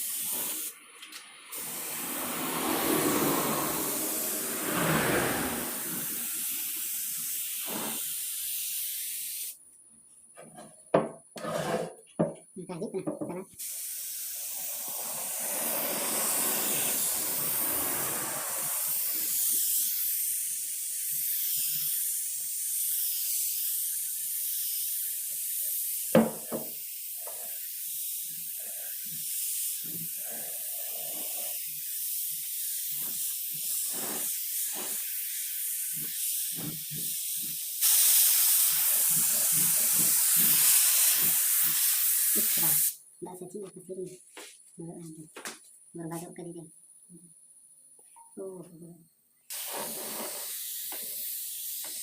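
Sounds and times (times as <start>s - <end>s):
spray gun hissing: 0.0s - 0.8s, 1.5s - 9.6s, 13.6s - 43.0s, 49.5s - 52.0s.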